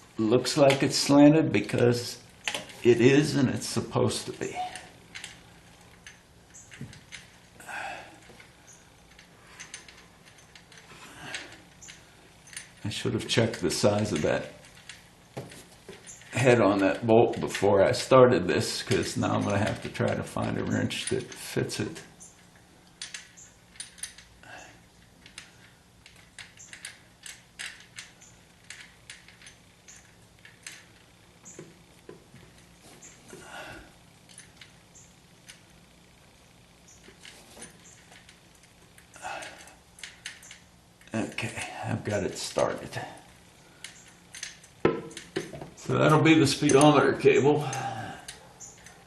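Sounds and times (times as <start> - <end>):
faint steady hum: 0.0 - 49.0
small metal parts clicking: 1.6 - 15.2, 16.0 - 49.0
metal parts scraping: 2.4 - 35.7, 36.9 - 49.0.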